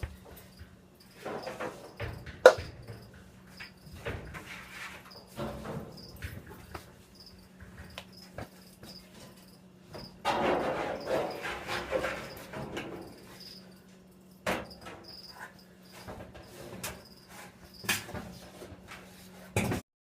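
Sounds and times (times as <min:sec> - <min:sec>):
tools clattering on dryer: 0:00.0 - 0:19.8.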